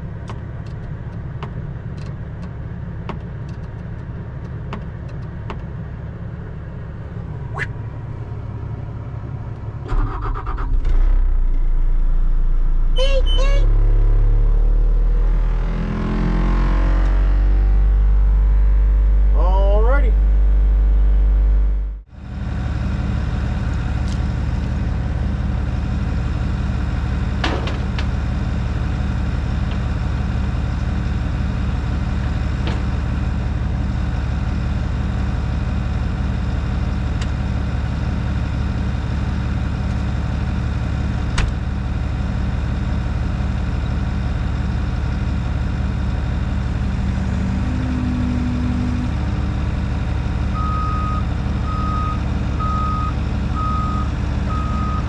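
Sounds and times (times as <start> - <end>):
skid-steer engine running: 20.3 - 55.0.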